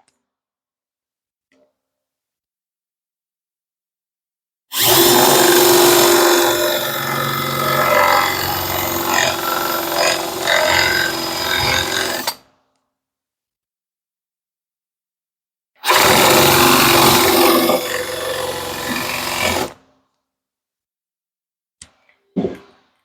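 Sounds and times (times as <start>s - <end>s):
power drill boring into wood: 4.7s - 12.4s, 15.8s - 19.8s.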